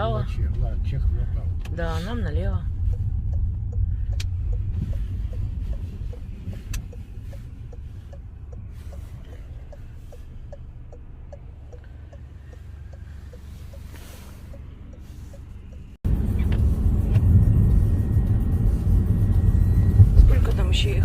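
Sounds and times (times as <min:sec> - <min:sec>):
car cabin rumble: 0:00.0 - 0:21.0
turn signal ticking: 0:00.0 - 0:21.0.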